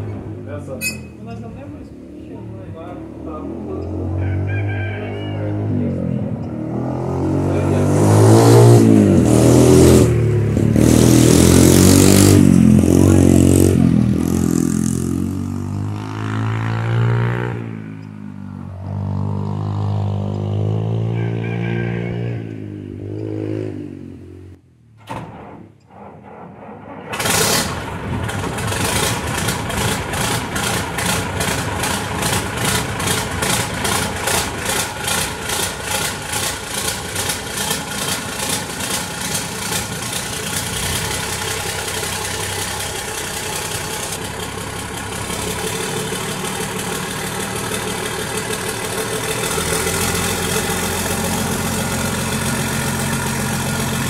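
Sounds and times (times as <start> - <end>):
diesel engine starting and idling: 25.1 - 54.0.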